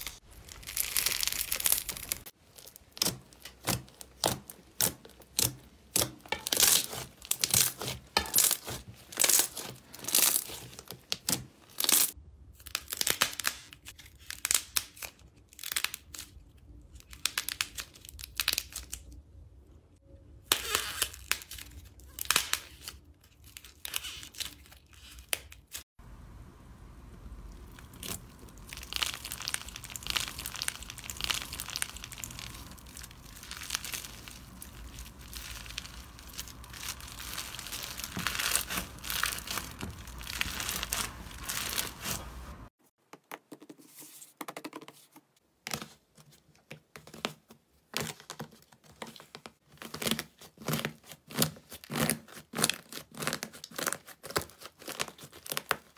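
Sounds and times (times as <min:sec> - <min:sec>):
slime crackling and popping: 0:00.0 - 0:19.1, 0:27.4 - 0:42.7, 0:49.6 - 0:55.9.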